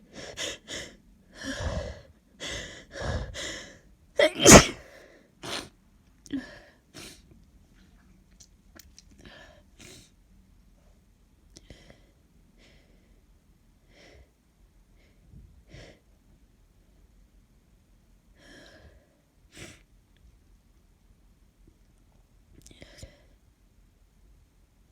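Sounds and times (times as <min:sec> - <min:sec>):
person sniffling: 0:04.2 - 0:04.8.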